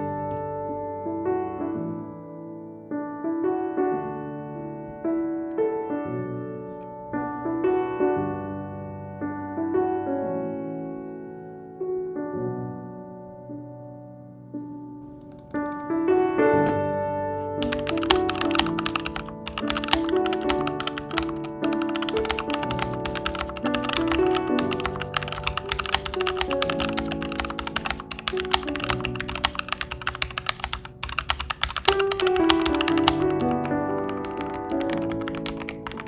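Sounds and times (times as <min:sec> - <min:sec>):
piano music: 0:00.0 - 0:36.0
typing on a mechanical keyboard: 0:15.0 - 0:15.9, 0:17.6 - 0:36.0.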